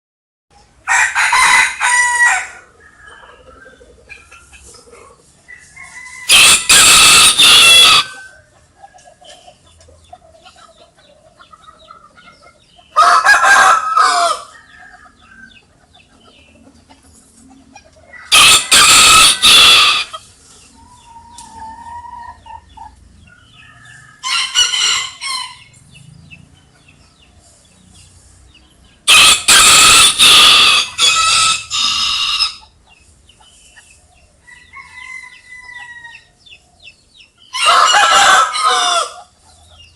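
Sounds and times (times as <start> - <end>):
chicken clucking: 0.5 - 39.9
rooster crowing: 0.8 - 3.6, 5.5 - 8.5, 13.0 - 15.6, 18.1 - 20.2, 23.5 - 25.8, 29.1 - 32.6, 34.4 - 36.4, 37.5 - 39.3.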